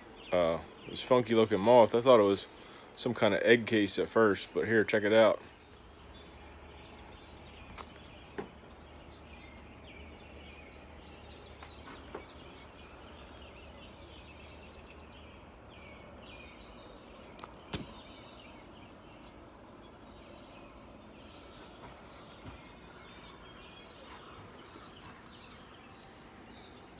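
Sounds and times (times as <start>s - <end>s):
distant soft chirping: 5.3s - 26.9s
sharp clicks: 17.4s - 18.1s.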